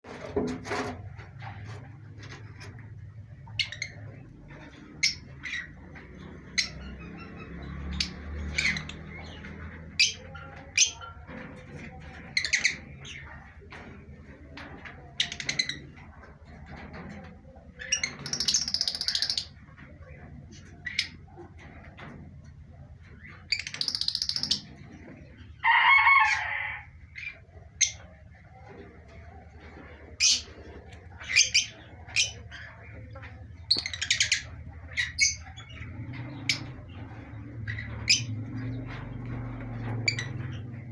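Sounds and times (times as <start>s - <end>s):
parrots chirping and squawking: 3.4s - 11.0s, 23.2s - 24.7s, 25.6s - 28.0s, 30.2s - 40.9s.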